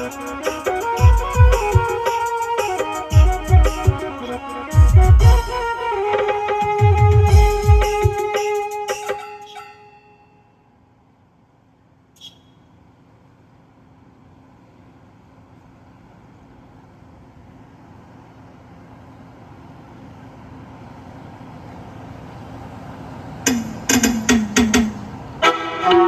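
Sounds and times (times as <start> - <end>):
band instruments hitting: 0.0 - 9.6, 23.5 - 26.0
low engine hum and rumble: 0.0 - 26.0.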